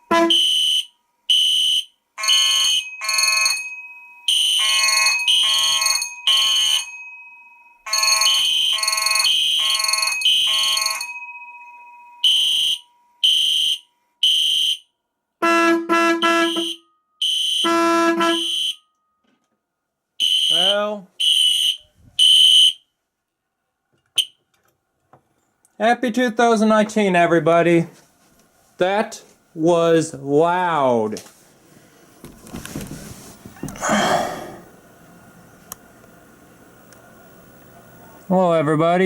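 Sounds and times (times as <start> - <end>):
fire alarm horn blasts: 0.0 - 3.6, 4.2 - 7.0, 7.8 - 11.2, 12.2 - 19.2, 20.2 - 22.9, 24.2 - 24.4
steady alarm tone: 0.0 - 19.2, 20.2 - 22.8.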